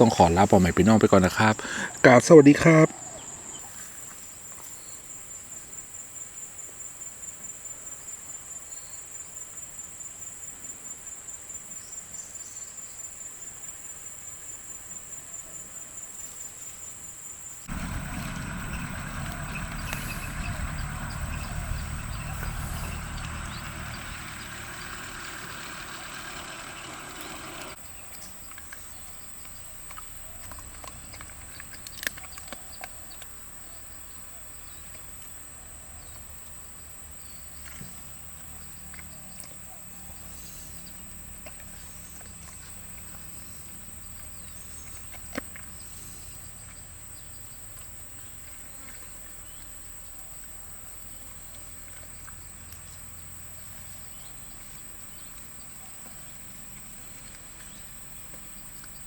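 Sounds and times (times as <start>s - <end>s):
low rumble: 17.7s - 25.9s.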